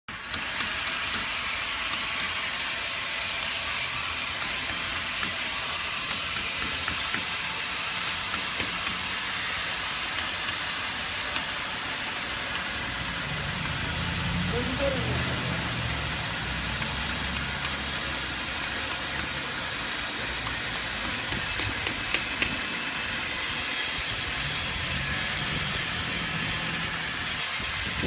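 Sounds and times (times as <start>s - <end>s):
steady hissing noise: 0.2s - 28.0s.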